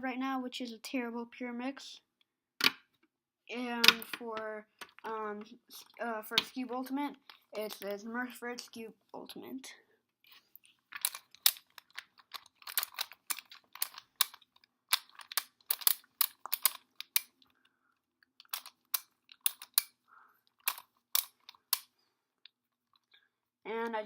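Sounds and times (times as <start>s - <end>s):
plastic puzzle clicking: 3.8s - 4.2s, 7.2s - 8.0s, 10.8s - 17.6s, 18.3s - 22.0s.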